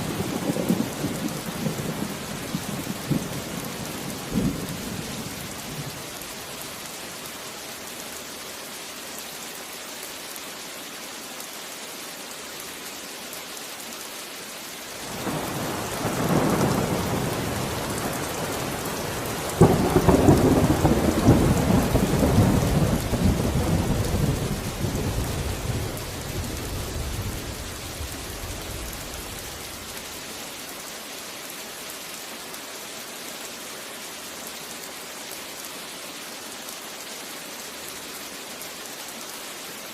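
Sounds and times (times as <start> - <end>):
heavy rain hiss: 0.0 - 39.9
thunder rumbling and cracking: 15.1 - 29.9.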